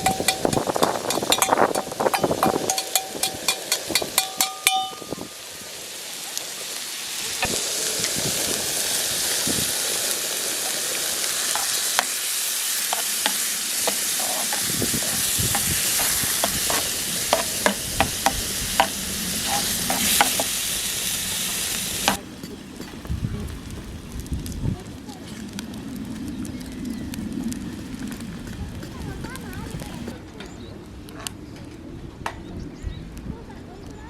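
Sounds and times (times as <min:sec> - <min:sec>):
utensil tapping against pan: 0:00.0 - 0:05.1, 0:12.9 - 0:20.5
food sizzling in a pan: 0:00.0 - 0:30.1.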